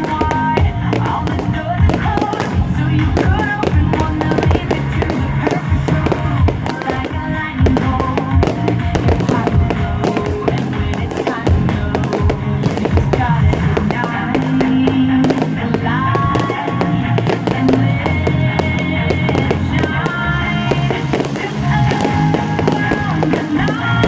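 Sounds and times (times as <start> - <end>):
fireworks banging and crackling: 0.0 - 24.0
music with held notes: 0.0 - 24.0.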